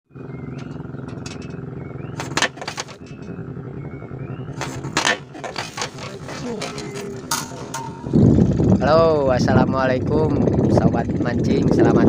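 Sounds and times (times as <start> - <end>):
engine running steadily: 0.1 - 12.0
sharp clacks: 2.2 - 3.4, 4.6 - 8.2.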